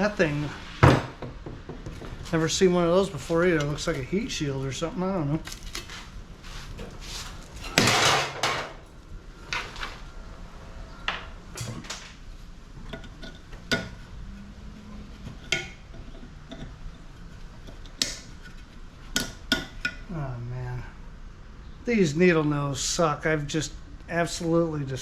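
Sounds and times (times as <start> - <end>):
loud scraping rattle: 5.4 - 9.9
tools clanking on sheet metal: 6.7 - 8.9.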